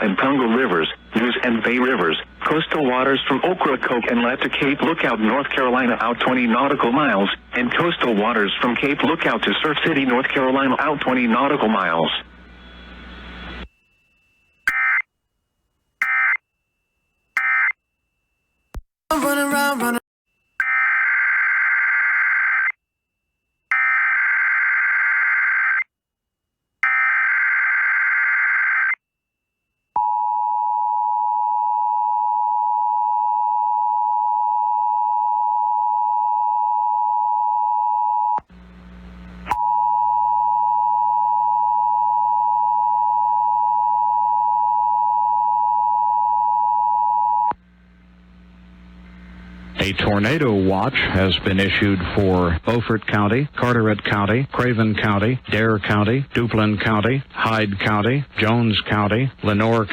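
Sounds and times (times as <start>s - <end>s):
low hum: 47.6s - 55.4s.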